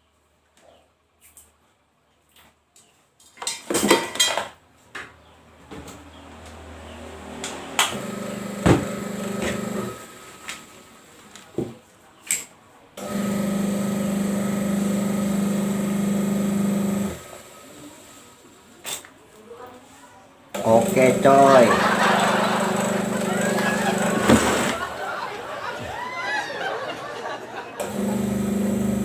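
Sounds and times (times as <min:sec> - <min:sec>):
washing machine motor humming: 0:07.8 - 0:10.9, 0:13.0 - 0:17.8, 0:20.5 - 0:26.0, 0:27.8 - 0:29.0.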